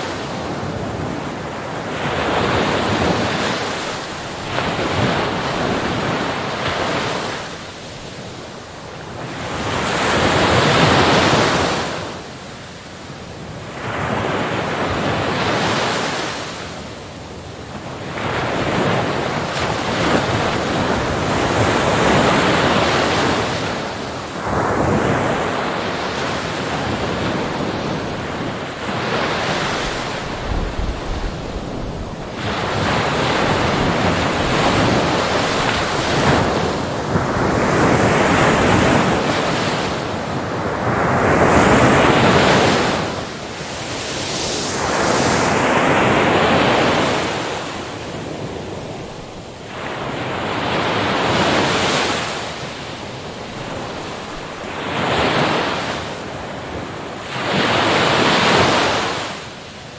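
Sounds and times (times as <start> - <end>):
wind on microphone: 0.0 - 12.3, 17.7 - 59.6
ocean waves breaking: 0.0 - 12.5, 17.8 - 59.9.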